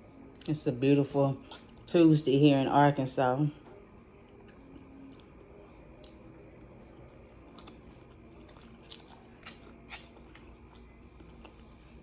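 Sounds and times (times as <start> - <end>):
person chewing food: 4.0 - 12.0.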